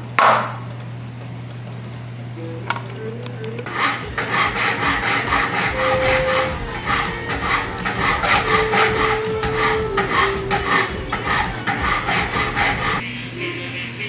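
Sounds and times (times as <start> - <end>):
file rasping on metal: 3.7 - 13.0.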